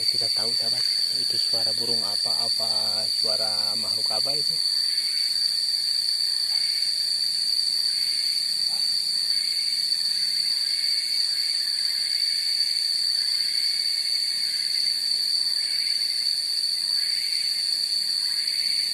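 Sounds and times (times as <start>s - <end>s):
faint chirping pulses: 0.0s - 5.0s
high-pitched insect trill: 0.0s - 18.9s.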